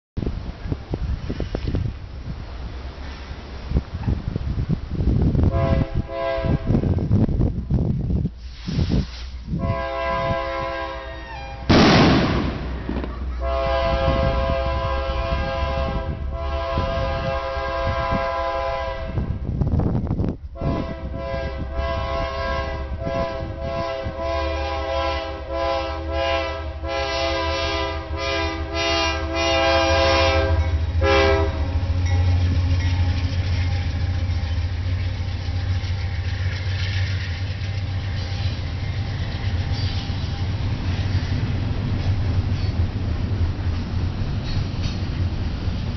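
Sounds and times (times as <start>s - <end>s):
train rumbling past: 0.2s - 45.9s
locomotive air horn: 5.5s - 7.2s, 9.5s - 11.9s, 13.3s - 19.4s, 20.6s - 33.0s.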